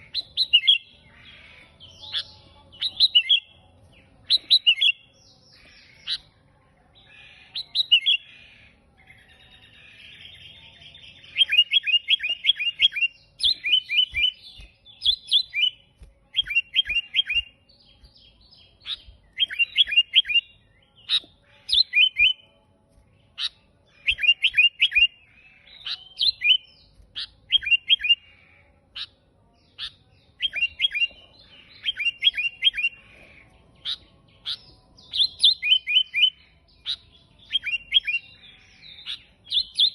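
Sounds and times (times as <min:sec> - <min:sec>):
bird chirping: 0:00.0 - 0:39.9.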